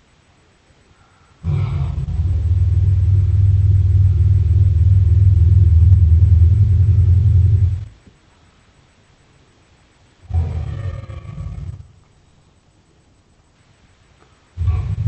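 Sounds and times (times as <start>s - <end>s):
deep low rumbling growl: 1.4s - 8.0s, 10.3s - 12.0s, 14.6s - 15.0s.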